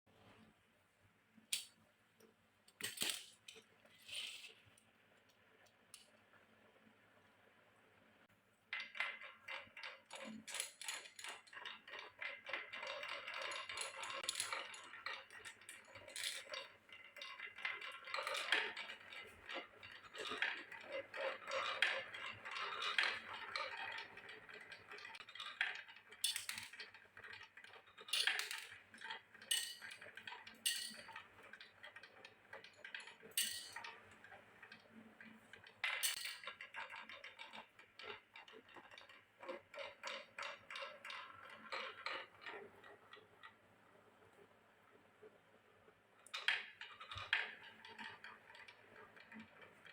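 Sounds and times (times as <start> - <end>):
marbles rattling down a track: 8.7 - 43.5, 46.2 - 49.9.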